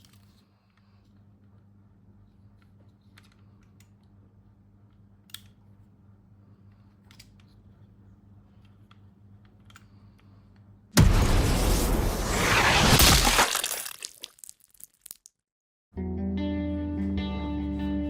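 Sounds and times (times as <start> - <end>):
sudden loud noisy sound: 11.0 - 13.5.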